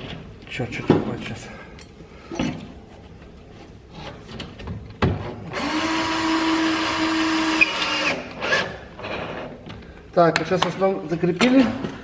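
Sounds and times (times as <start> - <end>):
power drill driving screw: 5.5 - 9.5.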